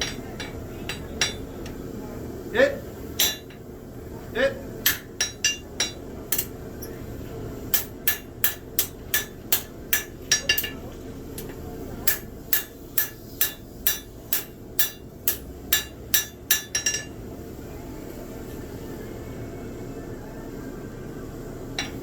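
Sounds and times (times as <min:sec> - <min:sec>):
hammer striking steel on anvil: 0:00.0 - 0:01.5, 0:03.2 - 0:03.6, 0:04.8 - 0:07.0, 0:07.7 - 0:17.2, 0:21.8 - 0:22.0.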